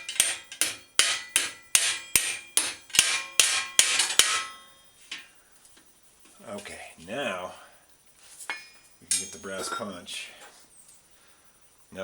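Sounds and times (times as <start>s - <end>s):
hammer striking metal: 0.0s - 4.8s, 8.5s - 9.9s.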